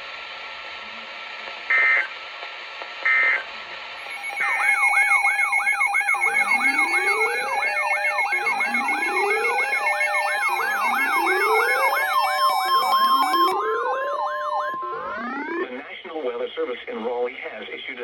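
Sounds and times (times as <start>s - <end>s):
siren-like alert sound: 4.0s - 15.9s
digital data tones: 4.0s - 16.0s.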